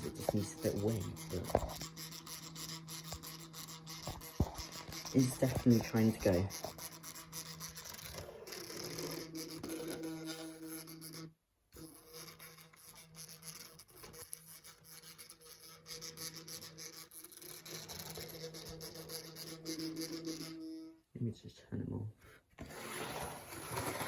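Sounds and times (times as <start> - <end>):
model train motor humming and grinding: 0.0 - 21.0.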